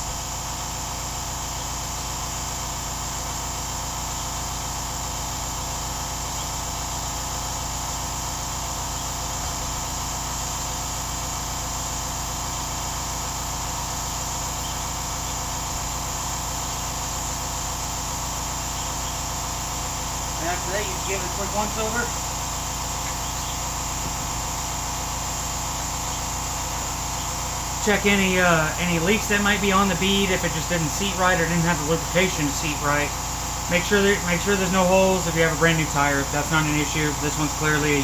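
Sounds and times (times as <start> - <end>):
mechanical hum: 0.0 - 38.0
constant hiss: 19.7 - 33.1.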